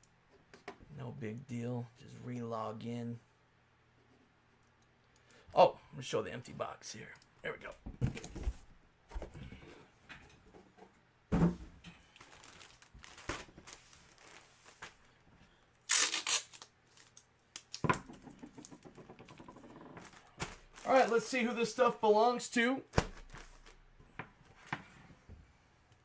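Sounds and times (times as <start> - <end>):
loud tearing rustle: 15.9 - 17.2.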